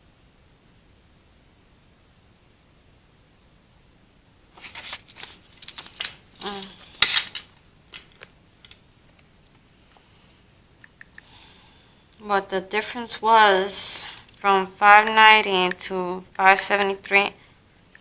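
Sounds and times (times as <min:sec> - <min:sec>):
paper rustling: 0:04.6 - 0:08.3.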